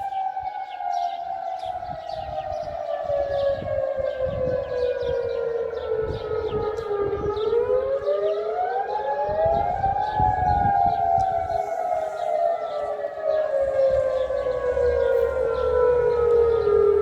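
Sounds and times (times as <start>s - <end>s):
sirens wailing: 0.0s - 17.0s.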